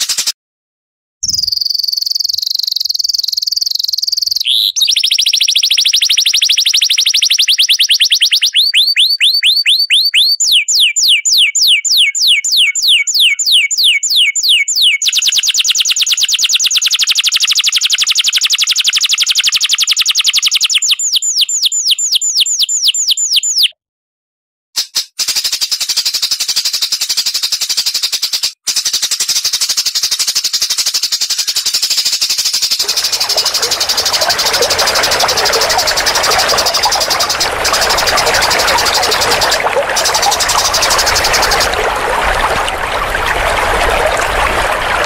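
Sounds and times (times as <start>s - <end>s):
songbird trilling: 1.2s - 15.4s, 20.7s - 23.8s.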